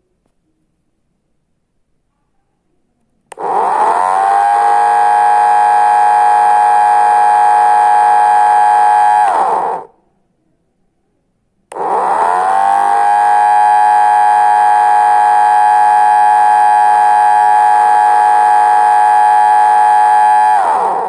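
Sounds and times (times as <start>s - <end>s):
alarm clock buzzer siren tone: 11.8s - 21.0s.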